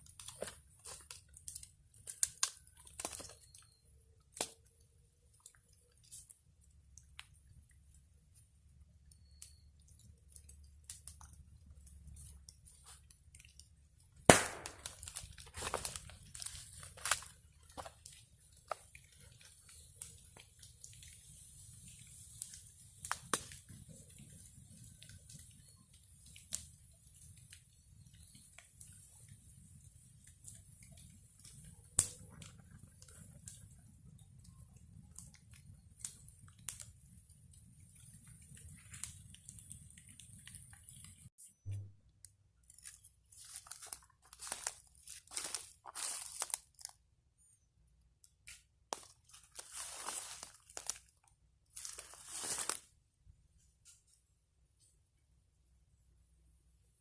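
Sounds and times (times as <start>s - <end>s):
low rumble of flames: 0.0s - 41.3s
wood bonfire crackling: 0.0s - 41.4s, 42.6s - 55.0s
loud sharp pop: 14.3s - 15.0s.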